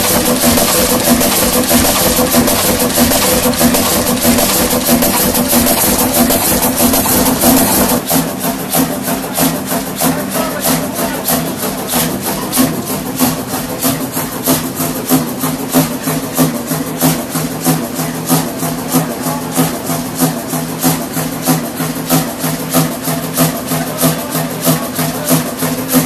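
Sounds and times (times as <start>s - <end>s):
valve gear clattering: 0.0s - 18.4s
large engine running: 0.0s - 26.0s.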